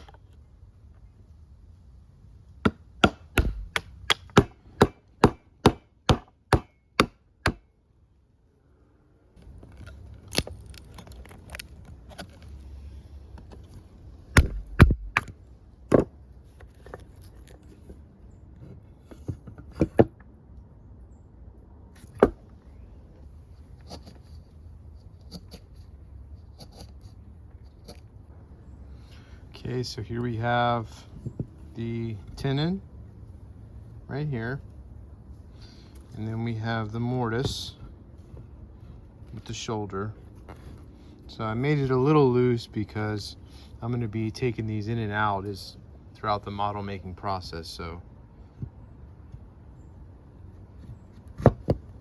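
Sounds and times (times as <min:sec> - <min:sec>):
chisel being struck: 0:02.6 - 0:07.7.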